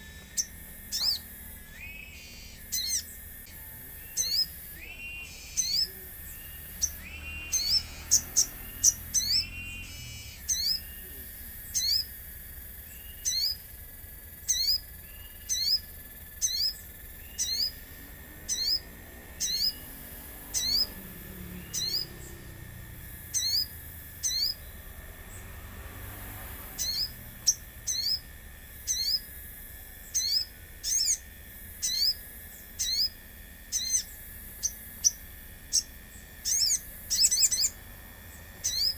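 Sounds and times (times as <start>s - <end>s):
bird calling sharp high notes: 0.0s - 12.2s, 14.4s - 25.4s
faint steady high tone: 0.0s - 13.8s.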